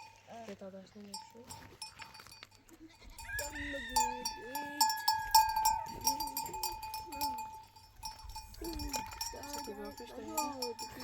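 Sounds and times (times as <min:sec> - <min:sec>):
livestock bells clinking: 0:00.0 - 0:11.0
animals bleating: 0:02.7 - 0:06.5.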